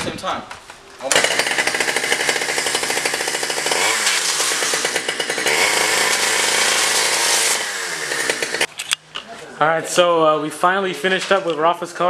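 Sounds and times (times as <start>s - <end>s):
chainsaw running at high revs: 1.1s - 8.7s.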